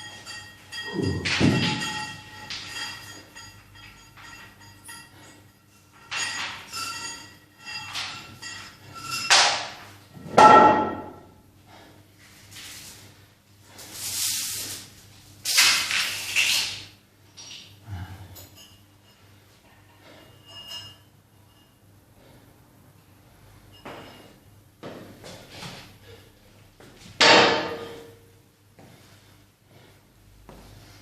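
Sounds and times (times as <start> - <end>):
metal gym weights clanking: 0.0 - 11.3.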